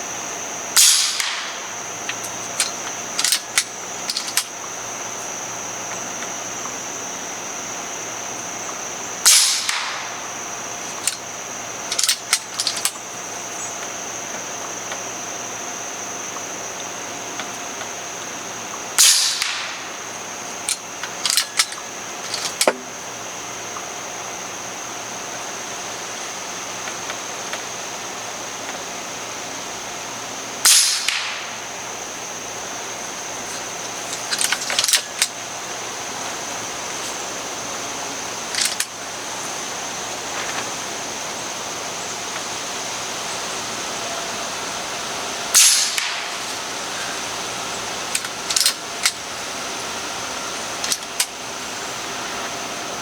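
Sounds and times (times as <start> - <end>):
low hiss: 0.0 - 53.0
steady high whine: 0.0 - 53.0
air rifle shot: 0.8 - 1.7, 9.3 - 10.3, 19.0 - 20.0, 30.6 - 31.7, 45.6 - 46.5
metallic clicks of rifle action: 0.8 - 4.5, 10.9 - 11.3, 11.9 - 13.0, 20.5 - 22.8, 34.1 - 35.3, 38.5 - 38.9, 48.1 - 49.2, 50.8 - 51.4.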